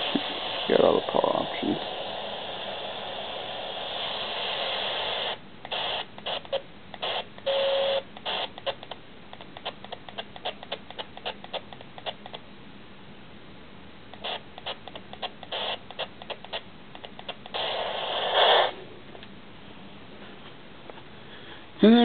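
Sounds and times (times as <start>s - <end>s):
radio static hiss: 0.0s - 12.5s, 14.1s - 19.2s
static bursts and clicks: 0.0s - 12.5s, 14.1s - 19.4s.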